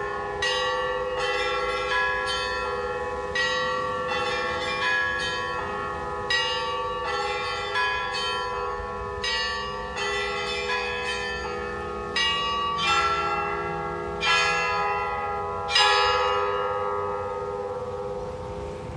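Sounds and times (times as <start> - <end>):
large bell humming: 0.0 - 18.9.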